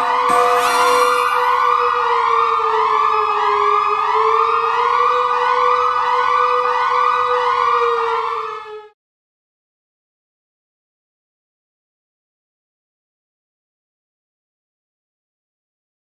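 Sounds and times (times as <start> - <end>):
electronic siren alarm whooping: 0.0 - 8.9.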